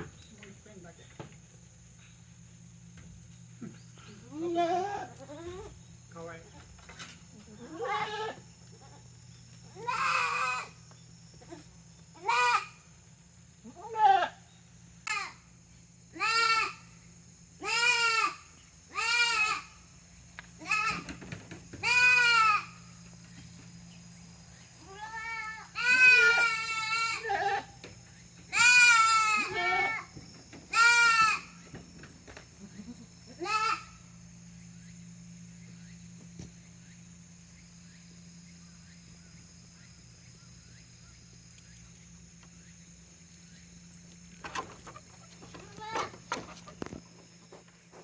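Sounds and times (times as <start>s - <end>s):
steady low hum: 0.0s - 48.0s
goats bleating: 4.3s - 5.5s, 7.6s - 9.0s, 9.8s - 10.7s, 12.2s - 12.7s, 13.7s - 14.4s, 16.2s - 16.8s, 17.6s - 19.7s, 21.8s - 22.8s, 24.9s - 27.8s, 28.5s - 30.1s, 30.7s - 31.6s, 32.6s - 33.9s.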